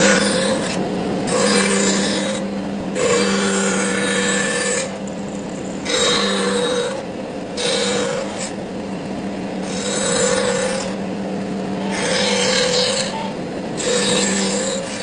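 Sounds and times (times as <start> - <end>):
power tool rasping against wood: 0.0 - 5.0, 7.6 - 8.6, 9.6 - 11.0, 11.8 - 15.0
steady motor hum: 0.0 - 15.0.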